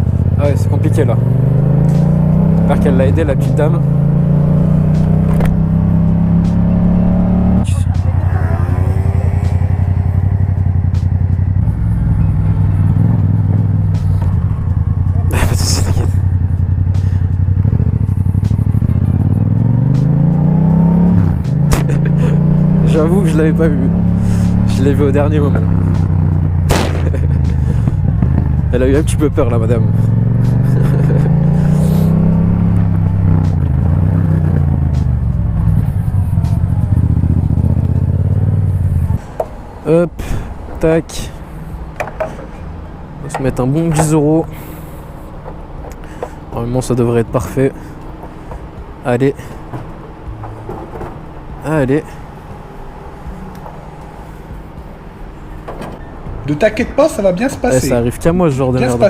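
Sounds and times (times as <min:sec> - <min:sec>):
motorcycle engine at low revs: 0:00.0 - 0:08.1, 0:08.9 - 0:39.6, 0:47.6 - 0:53.8.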